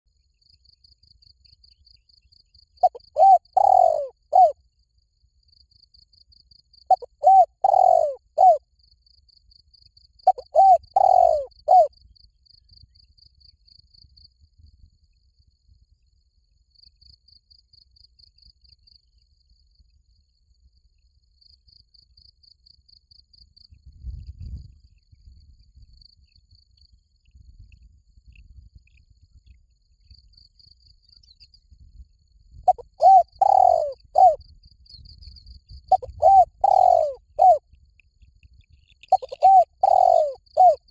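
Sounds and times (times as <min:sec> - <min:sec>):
cricket trill: 0:00.2 - 0:40.9
dove cooing: 0:02.8 - 0:04.6, 0:06.9 - 0:08.6, 0:10.3 - 0:11.9, 0:32.7 - 0:34.4, 0:35.9 - 0:37.6, 0:39.1 - 0:40.9.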